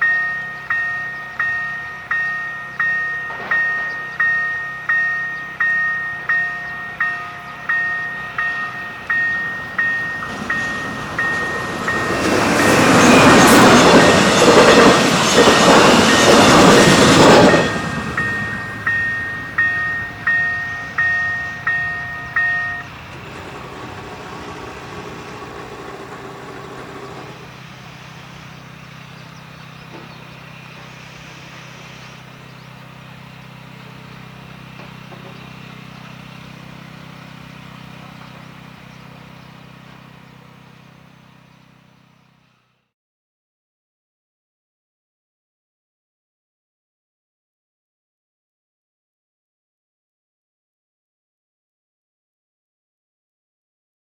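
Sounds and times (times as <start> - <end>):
crossing warning bell dinging: 0.0 - 42.0
train rushing past: 0.0 - 42.6.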